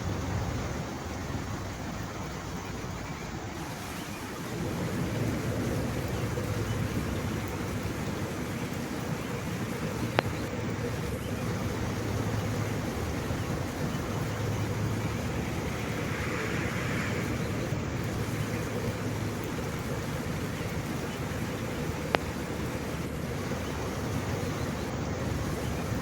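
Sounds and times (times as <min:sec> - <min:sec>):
rain and water hiss: 0:00.0 - 0:26.0
vehicle engine hum: 0:00.0 - 0:26.0
water splashing: 0:00.0 - 0:26.0.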